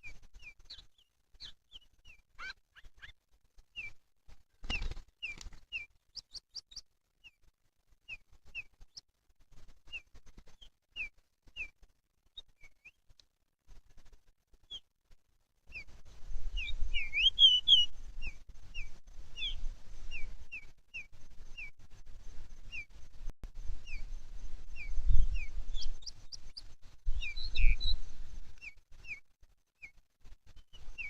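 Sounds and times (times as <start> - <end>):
bird chirping calls: 0.0 - 4.0, 4.6 - 7.4, 16.5 - 21.8, 24.7 - 28.0
faint clicks: 13.1 - 13.3.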